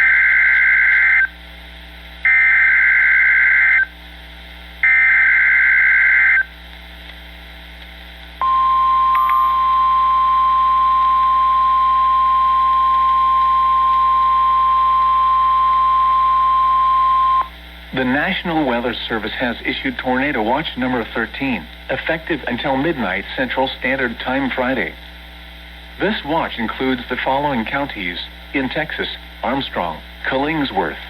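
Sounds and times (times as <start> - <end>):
steady warning alarm tone: 0.0 - 1.3, 2.3 - 3.9, 4.8 - 6.5, 8.4 - 17.5.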